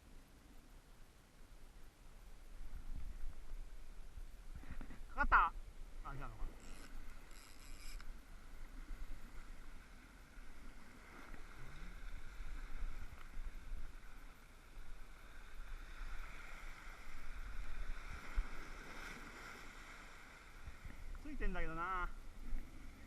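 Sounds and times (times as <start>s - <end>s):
sea water washing: 8.1s - 23.0s.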